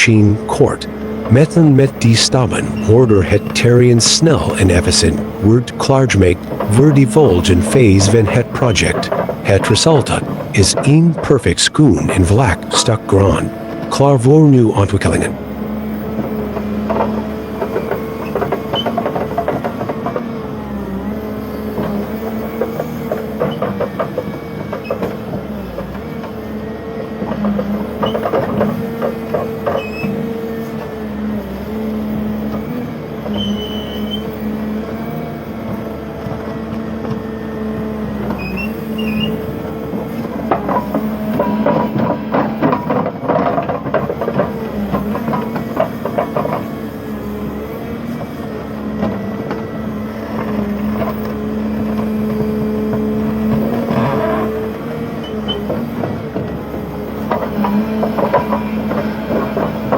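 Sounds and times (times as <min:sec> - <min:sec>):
heavy machine engine running: 0:00.0 - 0:59.9
rapid cracking and clattering: 0:38.0 - 0:59.9.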